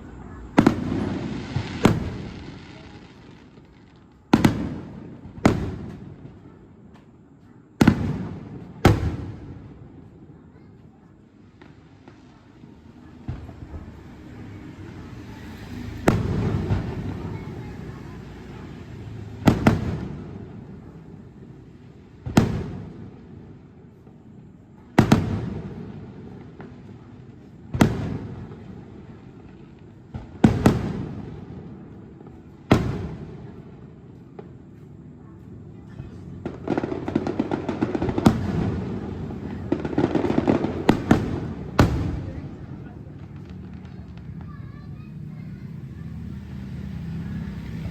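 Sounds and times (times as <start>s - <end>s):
fireworks bangs: 0.0s - 7.2s, 7.8s - 47.9s
firework bang: 0.5s - 3.1s, 36.4s - 42.5s.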